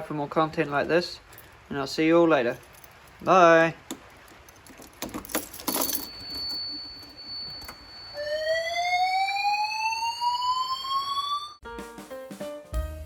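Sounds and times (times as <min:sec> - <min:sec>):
steady high-pitched alarm tone: 0:06.2 - 0:11.6
rising whoop alarm tone: 0:08.1 - 0:11.6.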